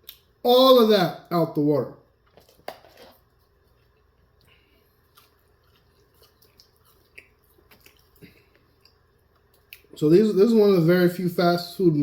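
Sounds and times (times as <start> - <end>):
person chewing wet mouth smacks: 3.7 - 10.0.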